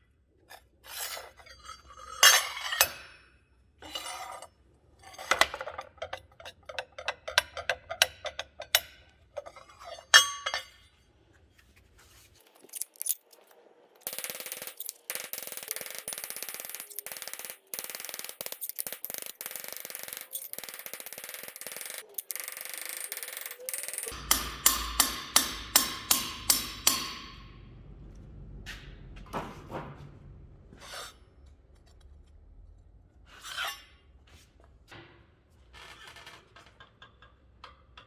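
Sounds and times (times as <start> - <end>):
crackling scraping on steel: 0.4 - 11.5, 33.1 - 34.3, 35.6 - 38.0
hammer blows on metal: 24.2 - 27.6.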